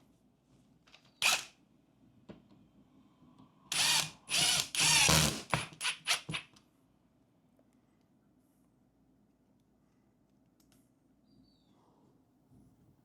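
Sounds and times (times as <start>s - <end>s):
power drill driving screw: 1.2s - 1.5s, 3.7s - 6.4s.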